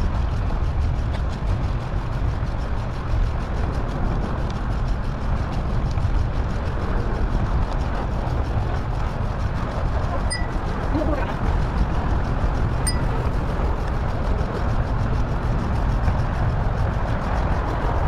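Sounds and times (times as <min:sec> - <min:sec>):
bicycle road rumble: 0:00.0 - 0:18.0
wind on microphone: 0:00.0 - 0:18.0
faint high chirp: 0:10.3 - 0:10.6, 0:12.9 - 0:13.1.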